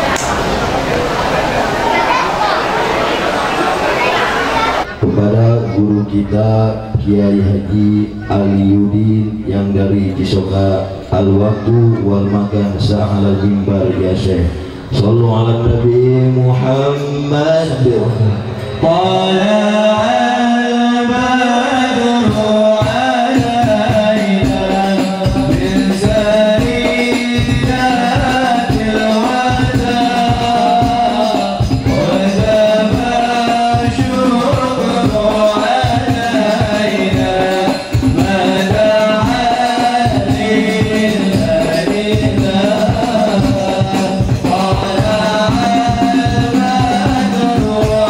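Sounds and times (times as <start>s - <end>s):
devotional song singing: 0.0s - 48.0s
frame drums with jingles: 22.2s - 48.0s.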